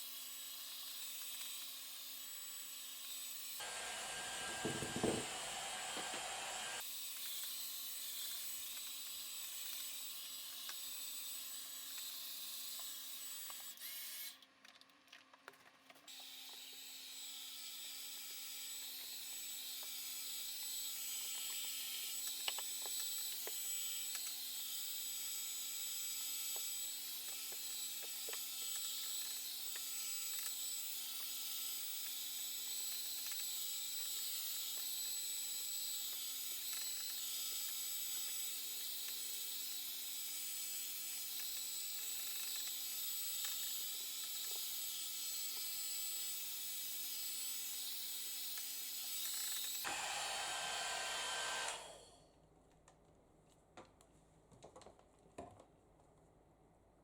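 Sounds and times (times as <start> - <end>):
hair dryer blowing: 3.6 - 6.8, 49.8 - 52.1.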